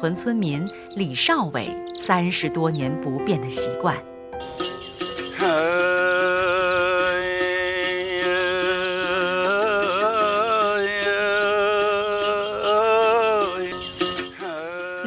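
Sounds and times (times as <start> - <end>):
person singing long notes: 5.4 - 15.0.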